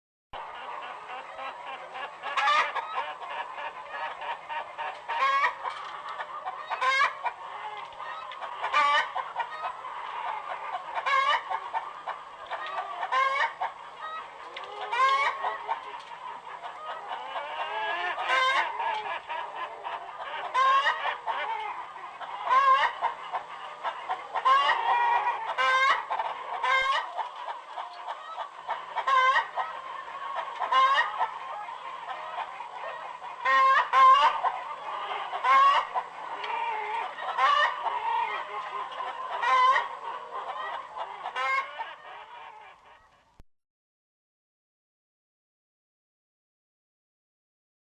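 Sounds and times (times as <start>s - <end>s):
poultry clucking: 0.4s - 43.4s
sharp poultry call: 1.1s - 7.3s, 8.0s - 15.8s, 22.4s - 43.1s.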